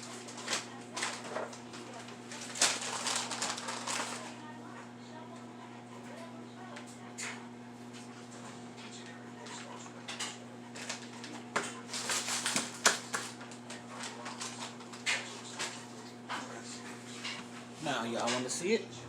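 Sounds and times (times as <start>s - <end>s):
electrical hum: 0.0s - 19.0s
kitchen utensils and dishes clinking: 9.4s - 18.6s.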